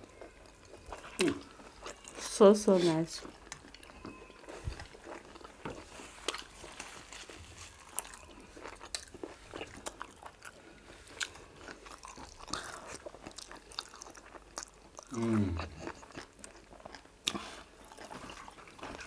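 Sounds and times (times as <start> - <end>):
people chewing and lip smacking: 0.0 - 19.0.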